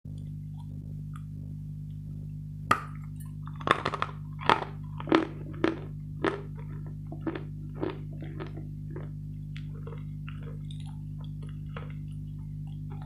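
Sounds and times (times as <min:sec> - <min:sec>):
steady low hum: 0:00.1 - 0:13.0
chalk crunched between teeth: 0:03.4 - 0:11.0.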